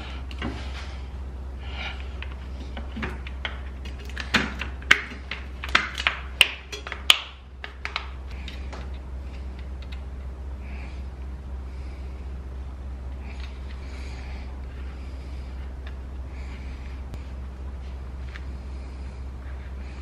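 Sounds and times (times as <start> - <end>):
steady low hum: 0.0 - 20.0
small parts and wires clicking: 2.2 - 10.3.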